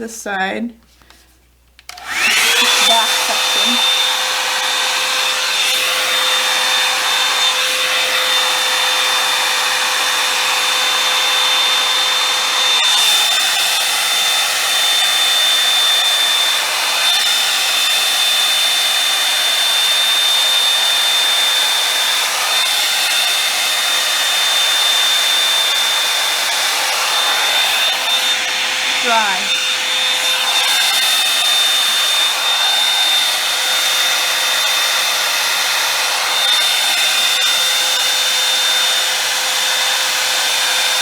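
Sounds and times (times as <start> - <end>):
hair dryer brush blowing: 1.9 - 41.0.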